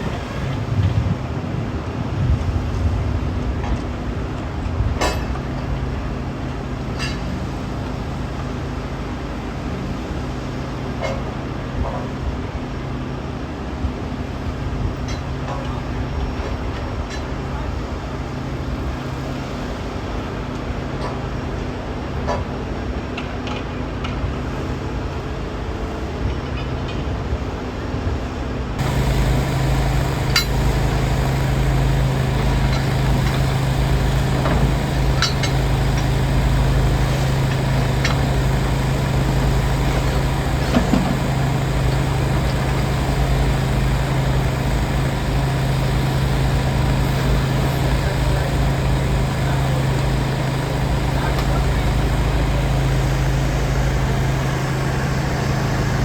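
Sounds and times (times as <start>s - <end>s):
heavy equipment engine running: 28.8s - 56.0s.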